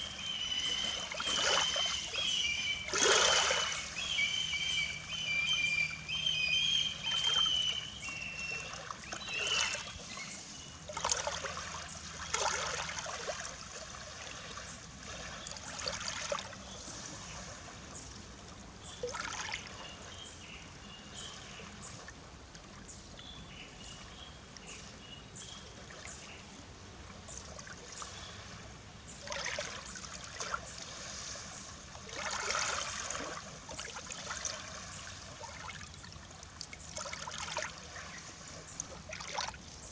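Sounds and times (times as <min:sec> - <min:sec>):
small waves lapping on shore: 0:00.0 - 0:39.9
bird chirping: 0:00.2 - 0:10.4.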